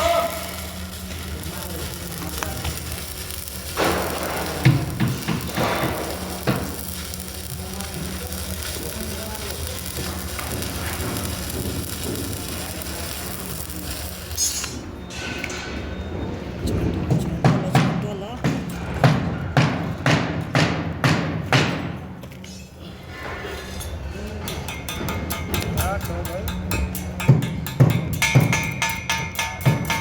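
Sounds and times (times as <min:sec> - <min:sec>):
arc welding hiss: 0:00.0 - 0:14.9.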